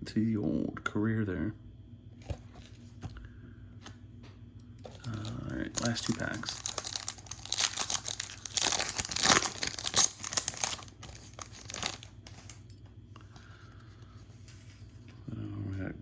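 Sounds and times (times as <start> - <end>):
wrapper tearing and crinkling: 4.8 - 12.6.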